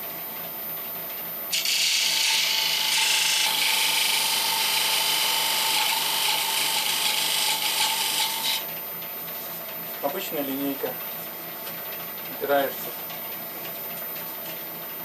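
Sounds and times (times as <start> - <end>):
wood lathe spinning: 1.5 - 8.6.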